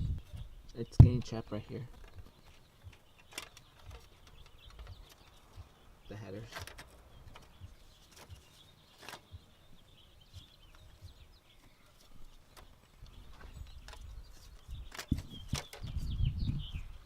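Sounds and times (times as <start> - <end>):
birds chirping: 0.0 - 17.0
clicks and knocks of engine parts: 1.9 - 5.6, 6.5 - 9.4.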